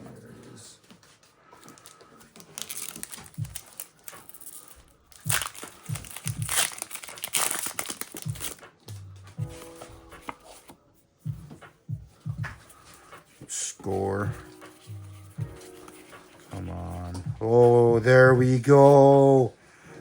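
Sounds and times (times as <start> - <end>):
foil wrapper crinkling and tearing: 1.7 - 8.6.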